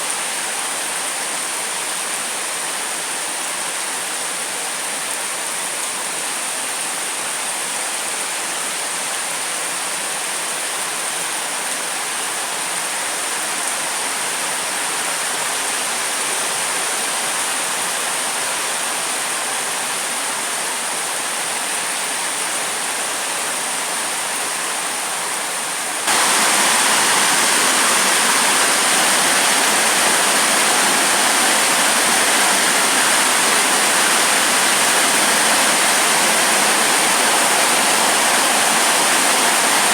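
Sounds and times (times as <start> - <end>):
heavy rain pouring: 21.2 - 39.9.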